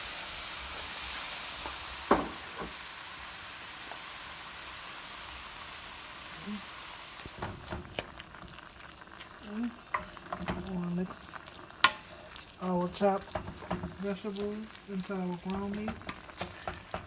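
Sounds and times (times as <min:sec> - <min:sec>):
meat sizzling in a pan: 0:00.0 - 0:17.0
utensil knocking against pan: 0:02.1 - 0:02.8, 0:13.2 - 0:14.0, 0:15.4 - 0:17.0.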